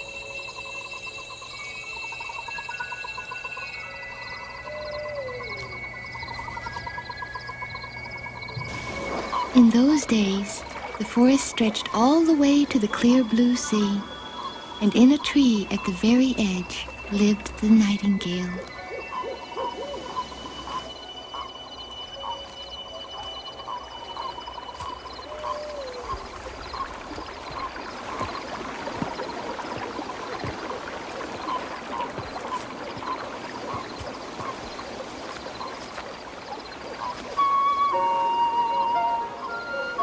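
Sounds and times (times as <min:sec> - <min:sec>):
thin high steady tone: 0:00.0 - 0:25.3
short chirping calls: 0:00.0 - 0:28.5
water washing: 0:00.0 - 0:40.0.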